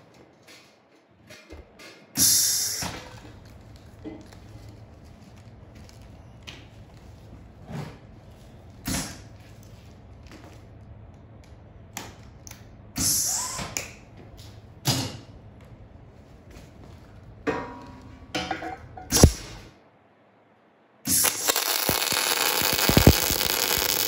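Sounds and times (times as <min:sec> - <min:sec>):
metal knocks and clanks: 0:17.4 - 0:19.4.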